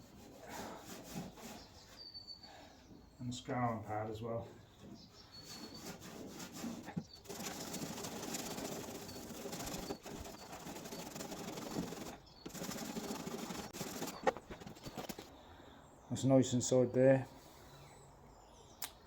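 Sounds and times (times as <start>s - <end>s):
scouring pad scrubbing: 5.7s - 15.3s.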